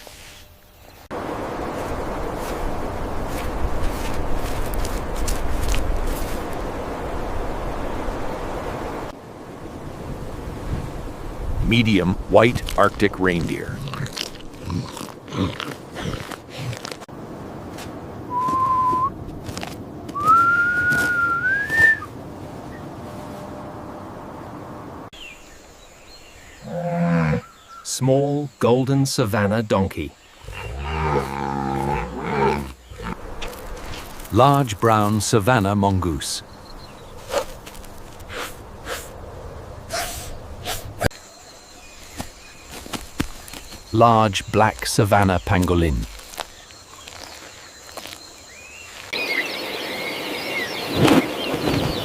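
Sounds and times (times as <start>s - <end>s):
steady background hiss: 0.0s - 13.8s, 17.1s - 52.0s
person whistling: 18.3s - 19.1s, 20.2s - 22.1s
animal breathy puffs: 38.2s - 39.1s.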